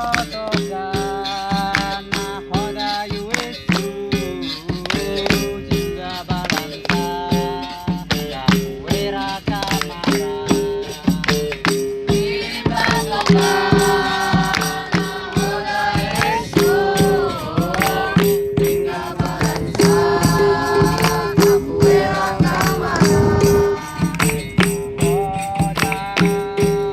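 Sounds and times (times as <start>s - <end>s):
jingling tambourine: 0.0s - 26.9s
percussion rhythm: 0.0s - 26.9s
group singing: 12.1s - 26.9s.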